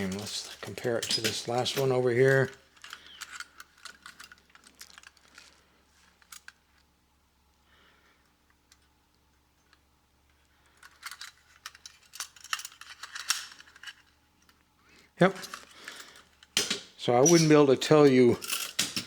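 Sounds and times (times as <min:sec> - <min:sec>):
metallic clicks of tin toys: 0:00.0 - 0:05.6, 0:10.7 - 0:14.6.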